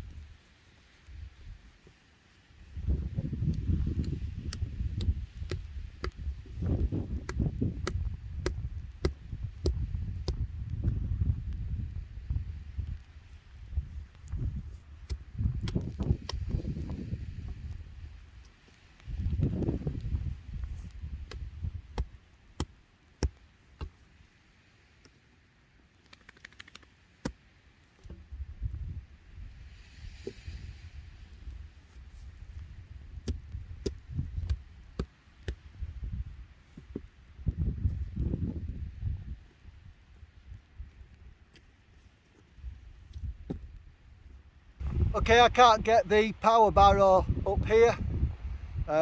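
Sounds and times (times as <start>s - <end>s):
wind rumble on microphone: 0.0s - 0.4s, 2.6s - 22.2s, 28.1s - 41.4s, 42.6s - 49.0s
light ticks of rock: 0.0s - 29.0s, 29.7s - 44.4s
hand tool striking ground: 3.9s - 10.4s.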